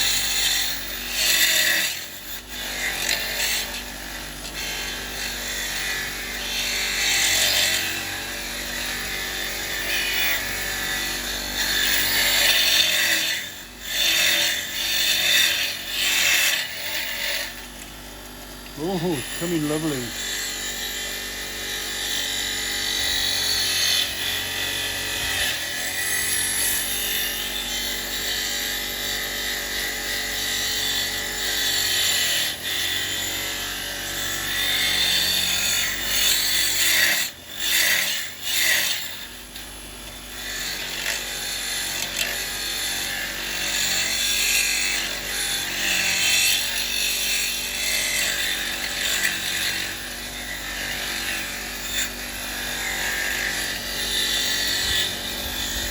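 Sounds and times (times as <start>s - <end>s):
wire wheel scratching metal: 0.0s - 17.6s, 18.7s - 28.6s, 42.4s - 55.9s
motor hum: 52.4s - 55.9s.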